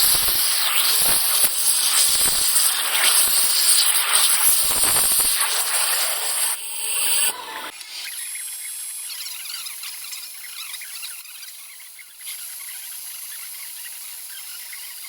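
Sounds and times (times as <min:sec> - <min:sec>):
power tool grinding metal: 0:00.0 - 0:08.6.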